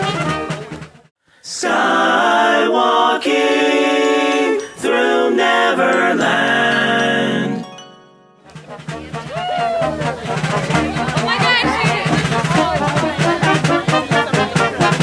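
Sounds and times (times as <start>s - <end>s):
a cappella group singing: 1.4s - 7.6s.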